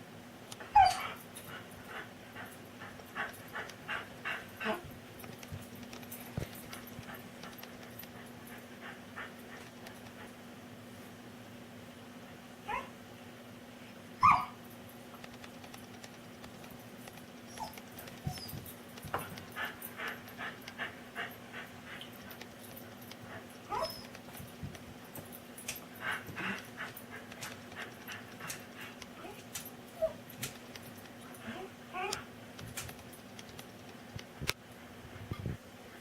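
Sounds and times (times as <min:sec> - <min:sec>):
dog whining and yipping: 0:00.7 - 0:01.2, 0:12.7 - 0:13.0, 0:14.2 - 0:14.6, 0:17.5 - 0:18.7, 0:23.7 - 0:24.2.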